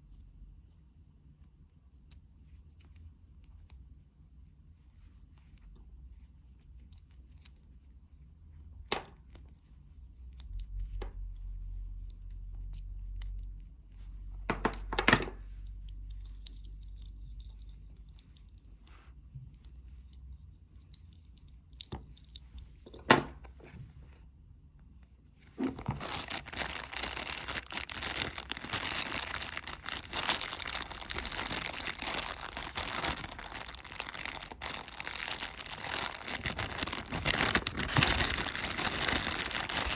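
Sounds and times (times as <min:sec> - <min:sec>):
dense crinkling and rustling: 0:25.2 - 0:39.9.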